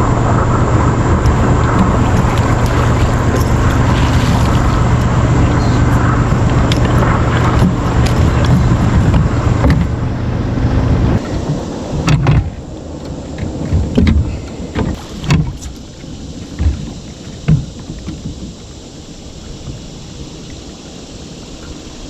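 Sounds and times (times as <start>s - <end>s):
low steady rumble: 0.0s - 20.8s
knocks and bumps on a kayak: 1.2s - 10.1s, 10.9s - 12.6s, 13.3s - 18.7s.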